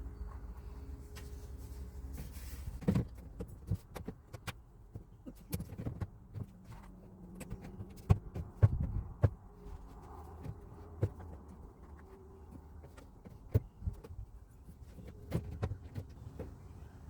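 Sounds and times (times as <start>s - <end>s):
low steady hum: 0.0s - 17.0s
plastic rivets clicking and knocking: 2.9s - 9.4s.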